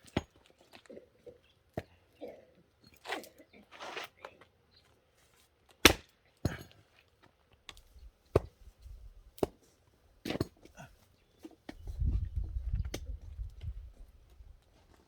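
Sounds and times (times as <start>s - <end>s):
axe splitting firewood: 5.8s - 6.8s, 7.7s - 11.0s.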